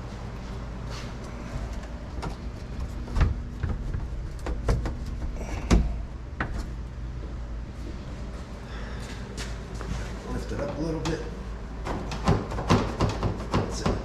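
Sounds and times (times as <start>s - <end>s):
window panel knocking and scraping: 2.2s - 6.7s.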